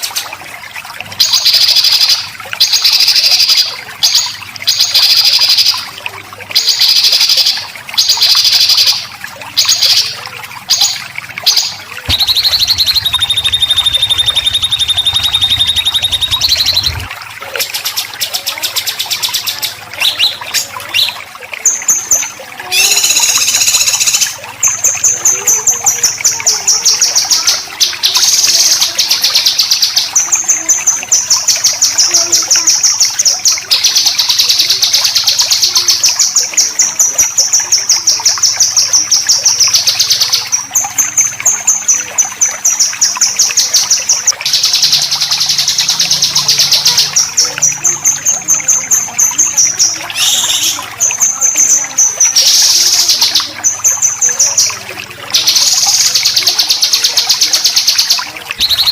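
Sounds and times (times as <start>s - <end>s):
songbird repeating harsh high notes: 11.5s - 17.1s, 22.7s - 24.4s, 50.1s - 50.9s.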